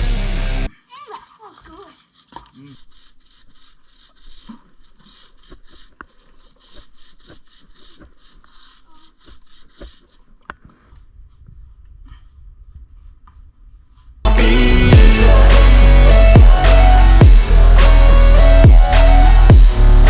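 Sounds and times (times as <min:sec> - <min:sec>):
brush scrubbing bike chain: 0:01.0 - 0:11.8.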